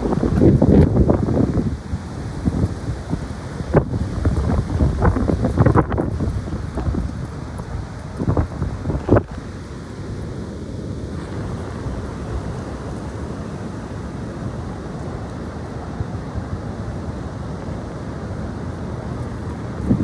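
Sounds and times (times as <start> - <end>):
strong gusty wind: 0.0 - 20.0
wind buffeting microphone: 0.0 - 20.0.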